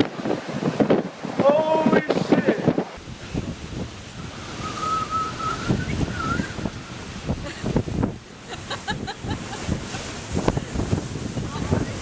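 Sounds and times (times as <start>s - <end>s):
wind buffeting microphone: 3.0s - 12.0s.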